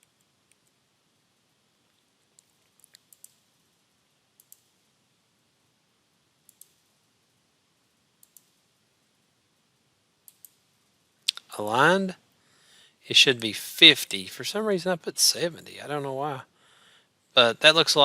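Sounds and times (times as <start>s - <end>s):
computer mouse clicking: 2.4s - 3.5s, 4.4s - 4.8s, 6.4s - 6.9s, 8.2s - 8.7s, 10.2s - 10.6s.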